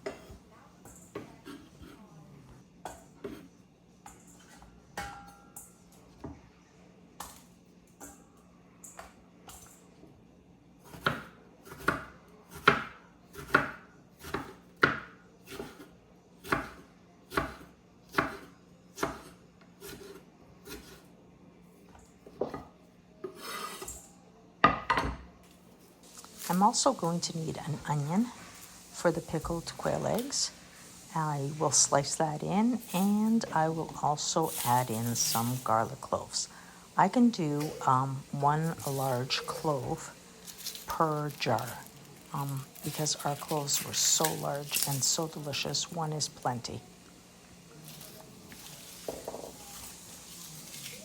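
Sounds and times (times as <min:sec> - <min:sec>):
knife strokes on cutting board: 0:42.4 - 0:46.0.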